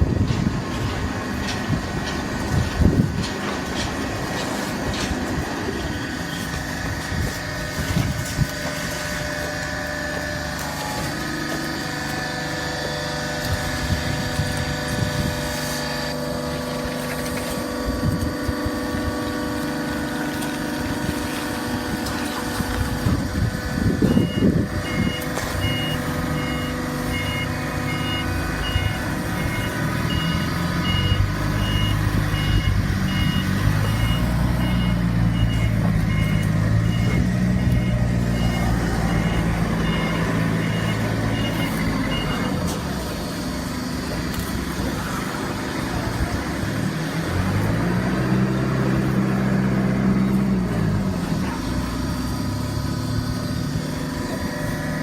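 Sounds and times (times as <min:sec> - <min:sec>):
machinery motor hum: 0:00.0 - 0:55.0
wavering engine rumble: 0:00.0 - 0:55.0
high electronic beeps: 0:24.0 - 0:42.6.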